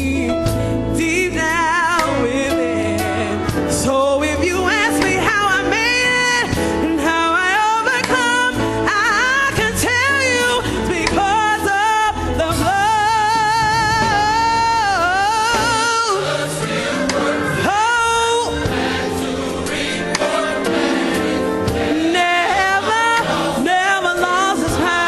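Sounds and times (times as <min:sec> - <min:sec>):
band with bass and drums: 0:00.0 - 0:04.1, 0:11.0 - 0:22.2
lead singer with vibrato: 0:00.0 - 0:25.0
choir singing: 0:12.6 - 0:25.0.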